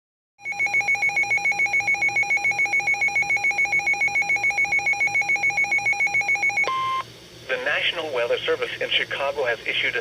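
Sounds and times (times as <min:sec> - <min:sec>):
pulsing two-tone alarm: 0:00.4 - 0:07.0.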